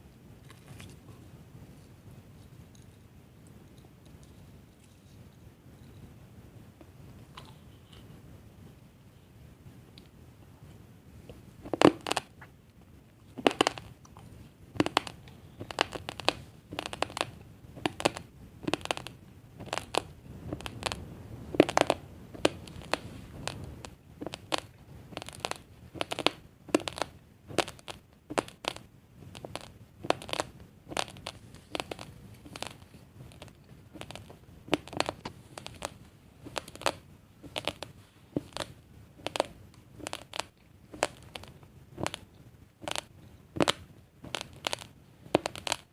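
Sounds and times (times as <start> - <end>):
raw rice grains being chewed: 11.6 - 12.5, 13.3 - 45.9.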